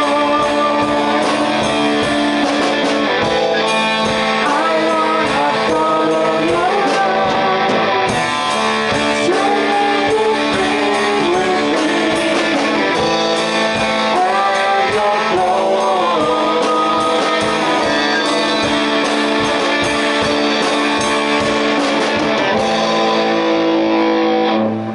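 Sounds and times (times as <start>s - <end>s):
person singing: 0.0s - 3.3s, 4.3s - 20.4s
electric guitars: 0.0s - 24.9s
rock band playing: 0.0s - 24.9s.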